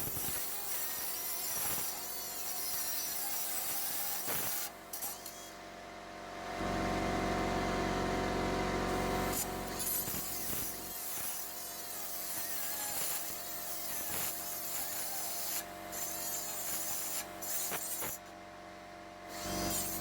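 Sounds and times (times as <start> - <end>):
air die grinder hissing and whining: 0.0 - 5.6, 8.9 - 18.2, 19.3 - 20.0.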